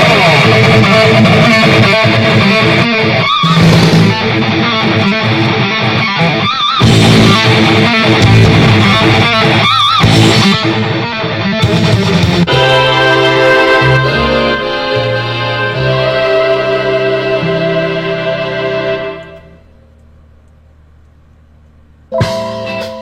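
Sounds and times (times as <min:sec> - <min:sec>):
heavy bass line: 0:00.0 - 0:19.9, 0:22.1 - 0:23.0
distorted electric guitar music: 0:00.0 - 0:20.0, 0:22.0 - 0:23.0
wavering high note: 0:12.5 - 0:19.7.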